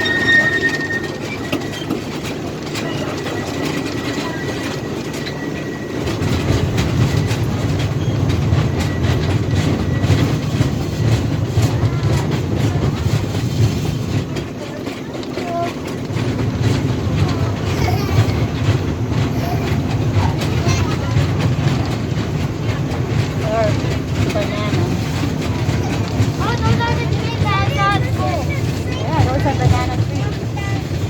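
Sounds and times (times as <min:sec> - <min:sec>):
thin high whine: 0:00.0 - 0:01.9
train rumble: 0:00.0 - 0:31.0
train wheels clacking: 0:00.0 - 0:31.0.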